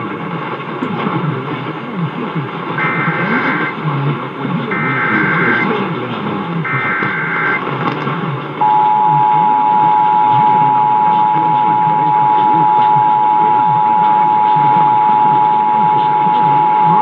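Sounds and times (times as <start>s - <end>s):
radio background noise: 0.0s - 17.0s
two-tone attention signal: 2.8s - 3.8s, 4.7s - 5.8s, 6.7s - 7.6s, 8.6s - 17.0s.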